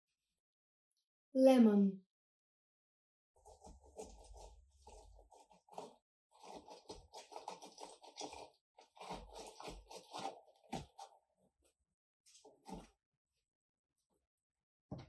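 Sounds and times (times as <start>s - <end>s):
lemons being scraped and crunched: 3.4s - 11.4s, 12.3s - 12.9s.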